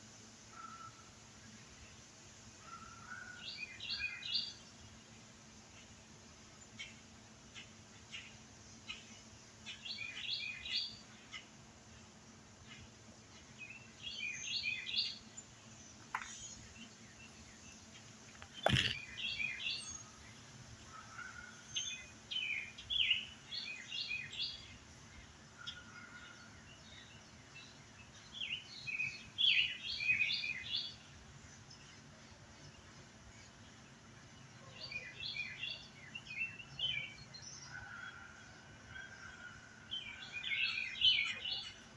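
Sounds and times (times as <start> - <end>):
bird chirping: 13.6 - 20.3.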